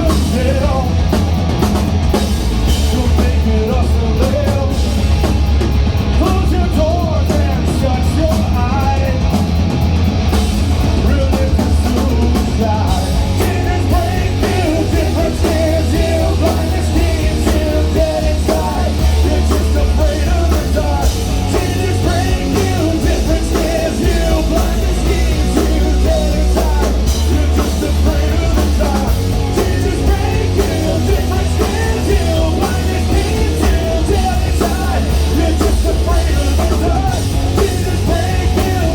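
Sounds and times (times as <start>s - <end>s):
heavy booming bass: 0.0s - 38.9s
live rock band playing: 0.0s - 38.9s
person singing: 11.0s - 38.9s.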